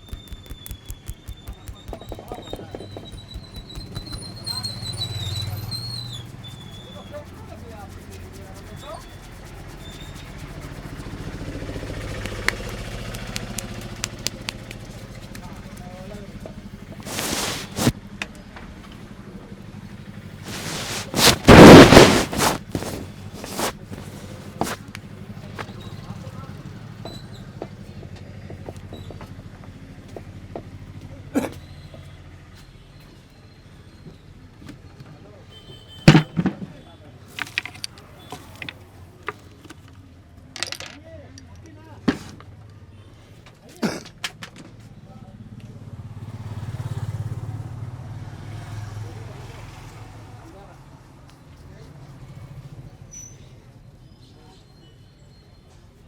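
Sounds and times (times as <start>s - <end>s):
light taps: 0.0s - 4.4s
sharp slap: 0.0s - 4.4s, 20.5s - 23.8s
short sharp clicks: 0.0s - 4.4s
hands rubbing head: 0.0s - 4.5s, 7.1s - 15.2s, 16.9s - 18.0s, 20.4s - 24.9s.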